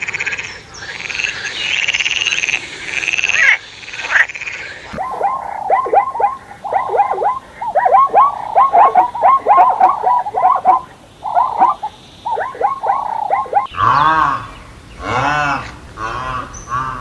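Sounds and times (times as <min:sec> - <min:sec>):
animal calls sliding down in pitch: 0:04.9 - 0:14.4.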